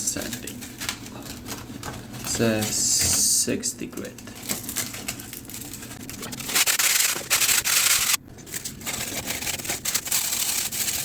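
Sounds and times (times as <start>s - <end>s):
sandpaper scraping: 6.2s - 8.2s, 8.8s - 11.0s.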